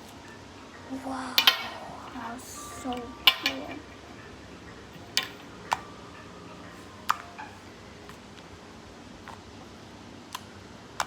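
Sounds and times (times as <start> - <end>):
hard objects tapping together: 1.4 - 1.9, 3.2 - 3.8, 5.0 - 5.9.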